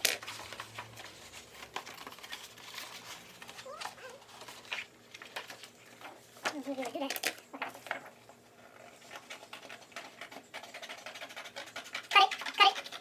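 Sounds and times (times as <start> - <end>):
paper crinkling: 0.0 - 7.9
scissors cutting paper: 9.3 - 13.0.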